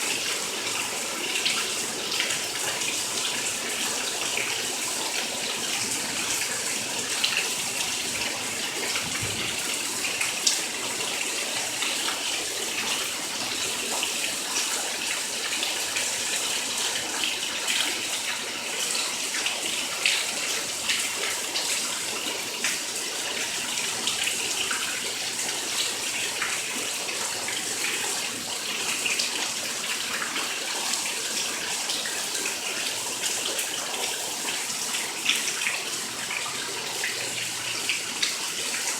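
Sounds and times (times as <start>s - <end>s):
heavy rain on floodwater: 0.3s - 11.8s.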